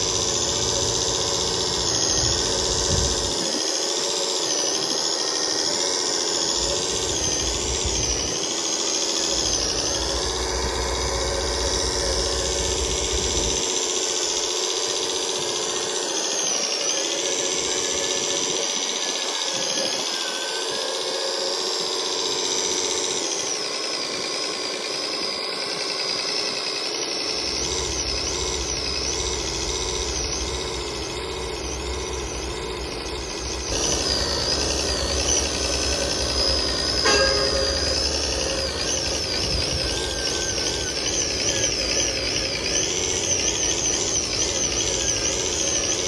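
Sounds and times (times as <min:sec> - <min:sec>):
model machine motors whining: 0:00.0 - 0:46.0
low hum: 0:09.2 - 0:14.5, 0:27.4 - 0:46.0.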